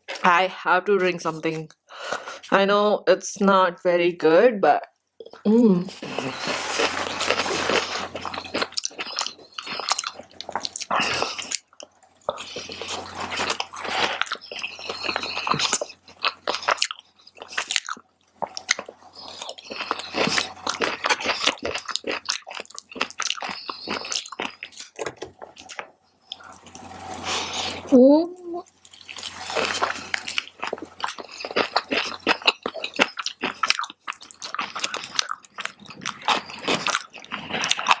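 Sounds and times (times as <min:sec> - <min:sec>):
person chewing food: 0:05.2 - 0:38.0
soft crunches: 0:05.9 - 0:11.6.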